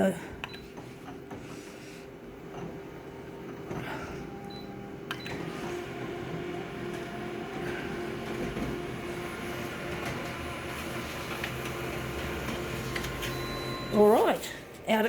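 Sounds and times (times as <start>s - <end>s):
photocopier humming: 0.0s - 15.0s
photocopier clicks: 9.8s - 13.4s.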